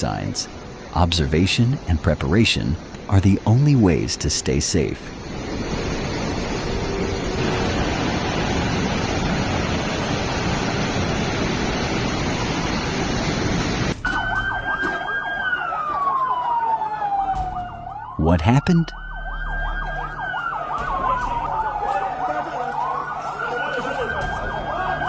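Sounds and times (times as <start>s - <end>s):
loud rushing noise: 5.1s - 14.8s
emergency siren wailing: 5.1s - 25.0s.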